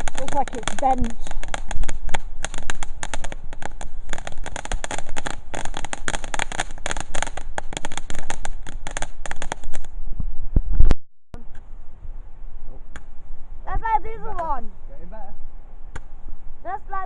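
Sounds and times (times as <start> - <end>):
firework fountain crackling: 0.0 - 10.0.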